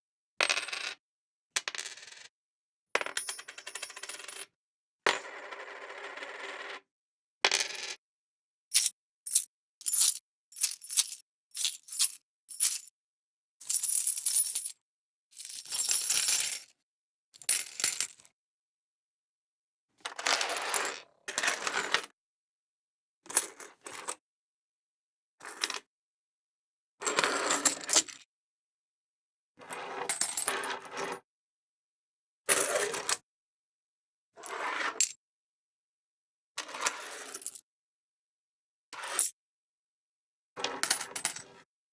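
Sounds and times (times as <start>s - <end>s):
coins dropping and clinking: 3.0s - 4.4s, 8.7s - 12.9s, 13.7s - 14.7s, 15.4s - 16.6s, 40.6s - 41.6s.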